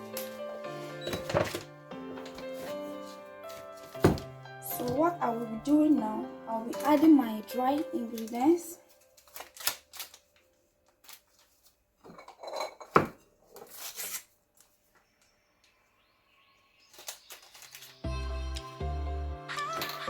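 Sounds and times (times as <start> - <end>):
background music: 0.0 - 10.1, 17.6 - 20.0
bowl and utensils clinking: 12.1 - 13.2.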